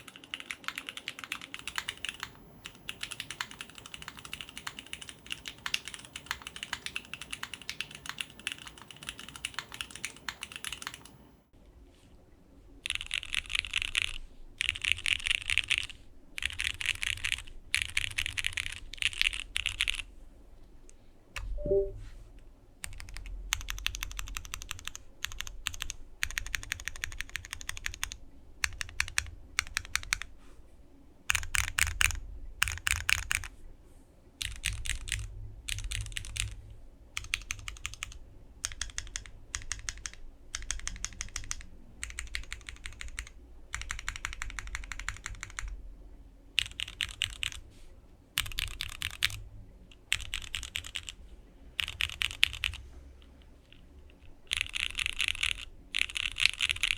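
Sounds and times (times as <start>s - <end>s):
mechanical keyboard typing: 0.0s - 11.2s, 12.8s - 20.1s, 22.8s - 30.3s, 31.3s - 33.5s, 34.4s - 36.6s, 37.2s - 45.8s, 46.6s - 47.6s, 48.4s - 51.2s, 51.8s - 52.8s, 54.5s - 56.9s.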